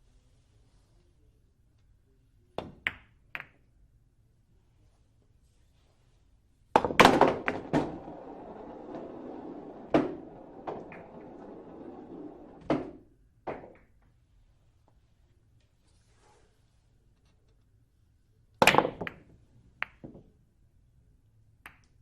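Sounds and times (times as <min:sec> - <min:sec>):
billiard balls clacking: 0:06.8 - 0:14.1, 0:18.6 - 0:20.3
billiard balls rolling on cloth: 0:06.8 - 0:14.2.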